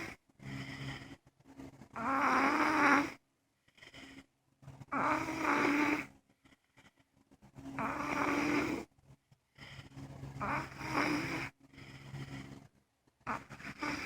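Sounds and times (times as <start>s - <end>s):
man snoring: 0.0s - 1.2s, 1.9s - 3.2s, 4.8s - 6.1s, 7.8s - 8.9s, 9.6s - 12.7s, 13.3s - 14.0s
quiet breathing: 0.0s - 14.0s.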